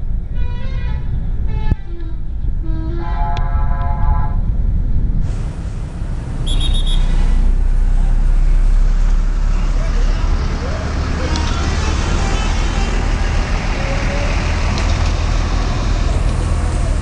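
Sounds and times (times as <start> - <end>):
diesel engine rumble: 0.0 - 17.0
multi-tone bus horns: 2.6 - 4.5, 6.4 - 7.7, 11.4 - 14.2
loud rushing noise: 5.0 - 17.0.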